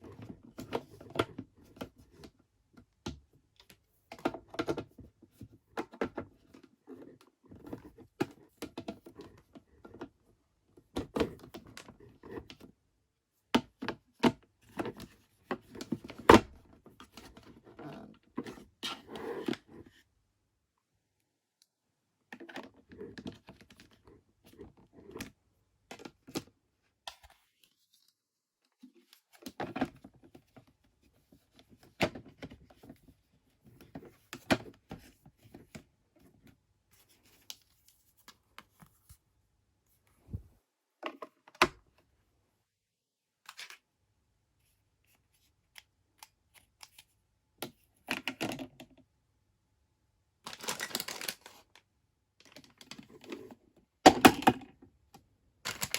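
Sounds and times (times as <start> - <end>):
packaging rustling: 50.5 - 51.6.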